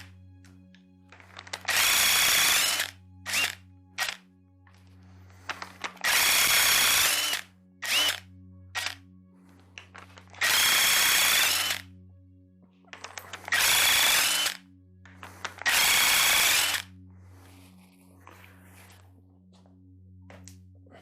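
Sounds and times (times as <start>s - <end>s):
impact wrench spinning bolts: 6.0s - 8.2s, 13.0s - 14.6s, 15.6s - 16.8s.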